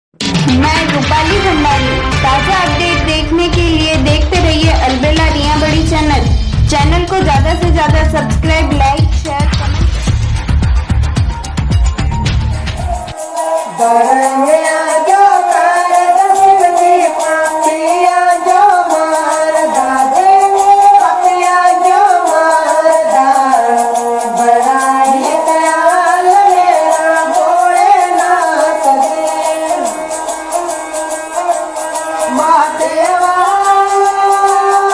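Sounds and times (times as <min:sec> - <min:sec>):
fast ticking percussion: 0:00.2 - 0:34.9
high voice singing ornamented melody: 0:13.2 - 0:34.9.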